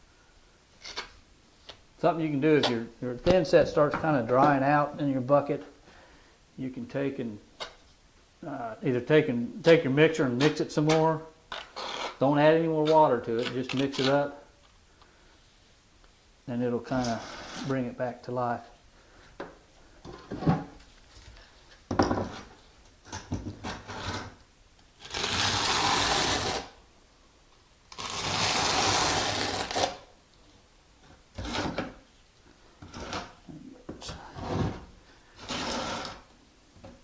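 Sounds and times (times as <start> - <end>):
knocks and scrapes: 16.9 - 17.8, 19.4 - 24.4, 31.0 - 32.0, 32.8 - 37.0
drill mixing mortar in bucket: 25.1 - 26.7, 28.0 - 30.0, 35.4 - 36.2.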